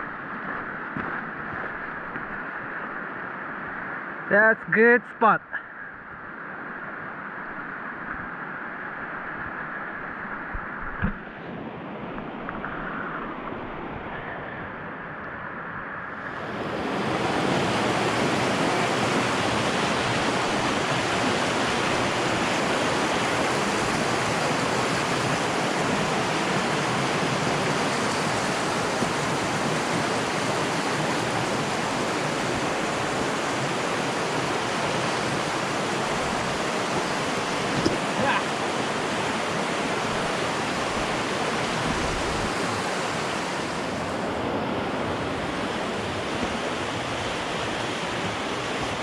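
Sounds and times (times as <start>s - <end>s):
river rushing over rocks: 16.3s - 49.0s.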